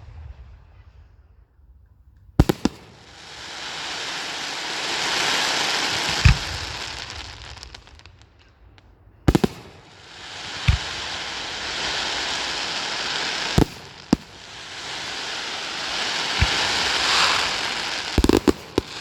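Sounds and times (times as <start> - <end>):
fireworks bangs: 2.2 - 19.0
firework hiss: 2.4 - 8.5, 9.3 - 19.0
firework crackles: 2.4 - 19.0.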